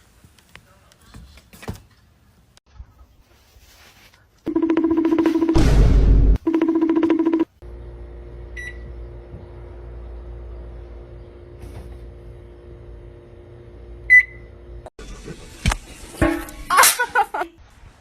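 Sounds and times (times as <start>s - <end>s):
appliance electrical hum: 6.5s - 17.4s.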